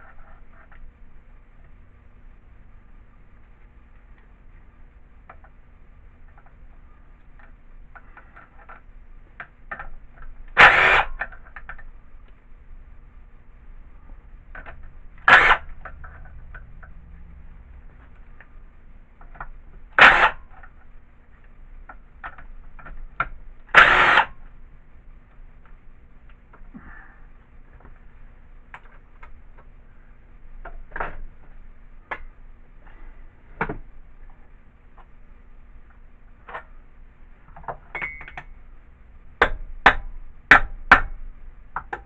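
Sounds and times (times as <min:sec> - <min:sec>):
impact wrench hammering: 0:14.6 - 0:17.1, 0:19.3 - 0:20.7, 0:23.2 - 0:24.4, 0:39.4 - 0:41.2.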